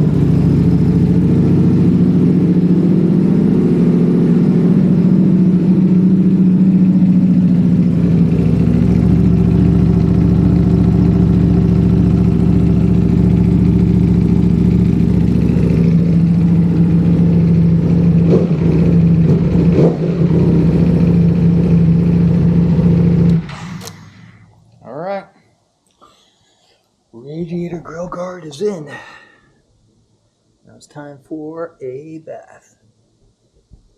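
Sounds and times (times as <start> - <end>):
motorcycle engine idling: 0.0 - 24.5.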